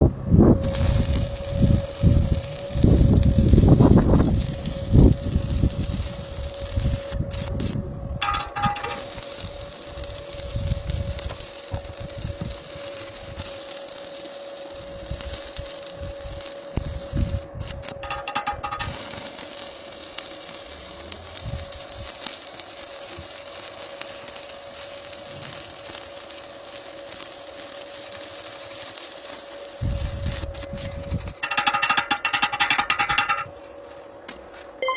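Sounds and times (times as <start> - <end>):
steady whine: 0.0 - 22.1
arc welding crackling hiss: 0.6 - 34.2.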